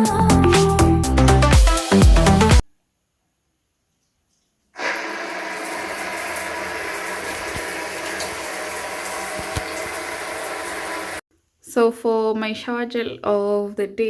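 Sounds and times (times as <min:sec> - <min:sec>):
water running: 0:04.8 - 0:11.2.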